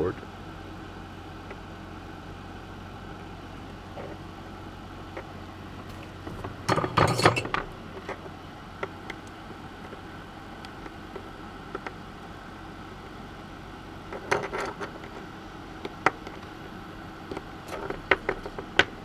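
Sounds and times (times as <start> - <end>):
low steady hum: 0.0 - 19.0
tools and components clinking: 5.9 - 8.2, 14.1 - 15.2.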